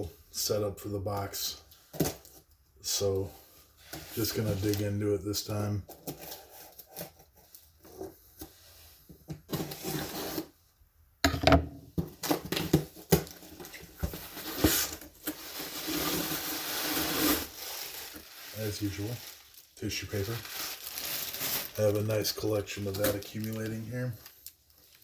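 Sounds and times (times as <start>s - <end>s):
packing paper rustling: 12.2s - 25.0s.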